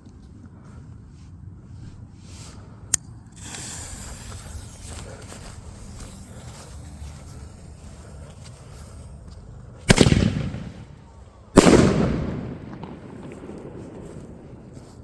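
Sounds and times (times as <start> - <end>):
firework bangs echoing: 9.9 - 15.0.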